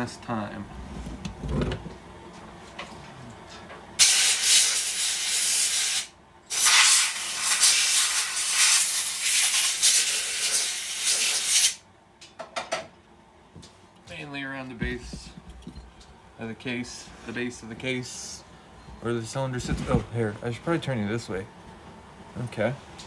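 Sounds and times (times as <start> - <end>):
compressed air blow gun hissing: 4.0 - 11.8.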